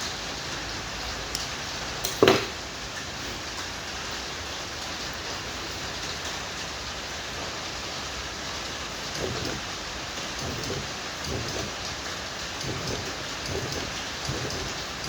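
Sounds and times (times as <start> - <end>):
steady hiss: 0.0 - 15.0
spot welder snap: 2.0 - 2.6.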